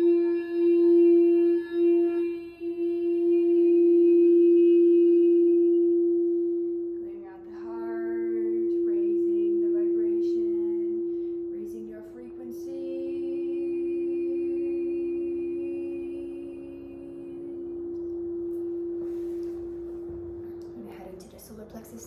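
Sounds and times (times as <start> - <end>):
woman singing wordless notes: 0.0 - 6.0, 7.0 - 18.0
crystal singing bowl ringing: 0.0 - 22.0.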